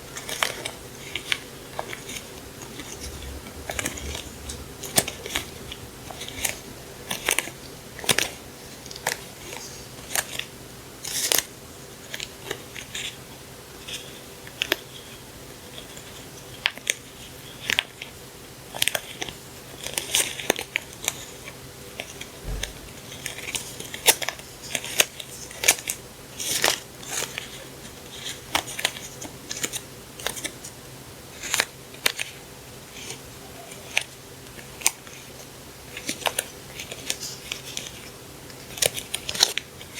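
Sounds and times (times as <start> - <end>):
faint steady hum: 0.0 - 17.6.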